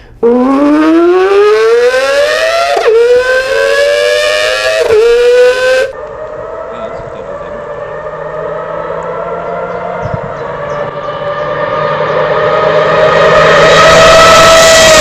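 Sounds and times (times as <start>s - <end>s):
person imitating car accelerating: 0.2s - 6.0s, 6.6s - 10.6s.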